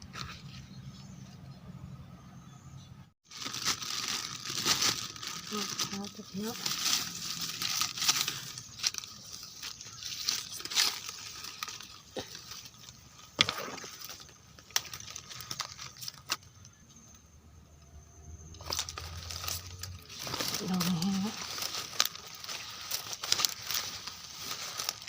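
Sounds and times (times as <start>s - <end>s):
dry leaves rustling and crackling: 3.2s - 16.7s, 18.5s - 25.0s
twigs snapping: 6.6s - 16.8s, 18.6s - 25.0s.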